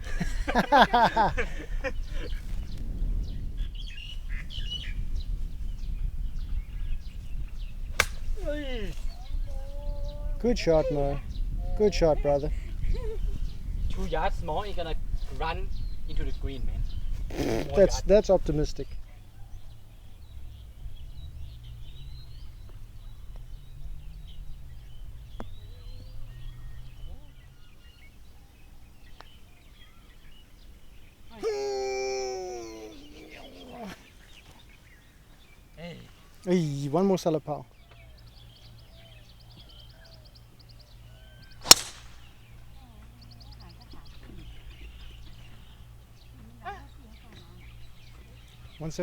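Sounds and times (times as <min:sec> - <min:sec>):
wind rumble on microphone: 0:00.0 - 0:30.4
small birds chirping: 0:00.0 - 0:49.0
golf club striking ball: 0:07.8 - 0:08.4, 0:41.6 - 0:42.5
person calling out: 0:31.4 - 0:34.0
sharp click: 0:41.7 - 0:42.2.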